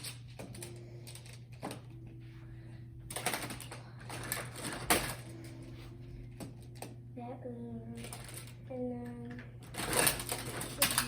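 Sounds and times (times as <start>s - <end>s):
plastic tiles clicking and clattering: 8.0s - 8.6s, 9.2s - 11.0s.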